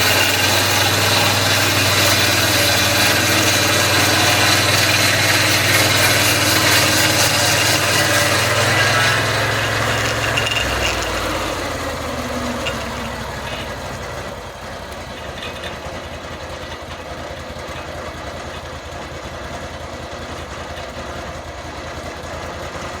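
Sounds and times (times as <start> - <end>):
sawing noise: 0.0 - 16.1
sawmill engine idling: 0.0 - 23.0.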